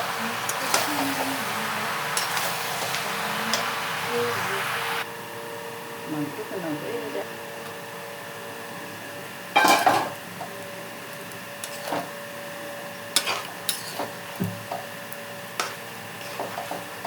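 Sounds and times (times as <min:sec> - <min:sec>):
spoon scraping and knocking a pot: 0:13.2 - 0:14.8, 0:15.6 - 0:16.9.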